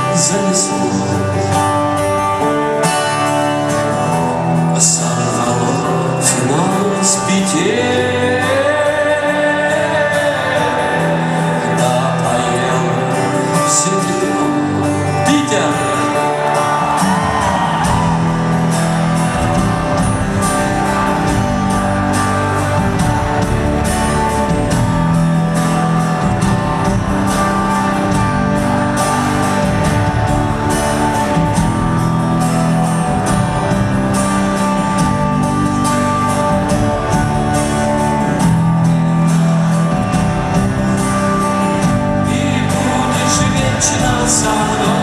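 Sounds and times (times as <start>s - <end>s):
sustained guitar notes: 0.0s - 45.0s
steady drum beat: 16.0s - 45.0s.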